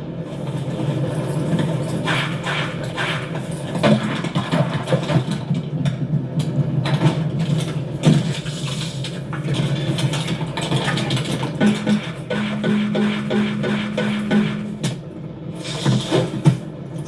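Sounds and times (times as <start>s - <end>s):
conveyor machinery rumble: 0.0s - 17.0s
metallic clanks and rattles: 9.6s - 15.0s.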